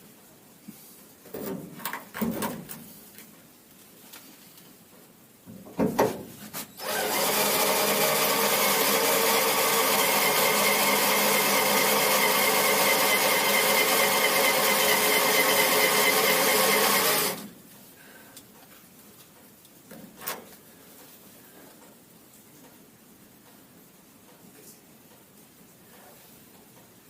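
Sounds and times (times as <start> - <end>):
electric drill running: 6.8 - 17.5.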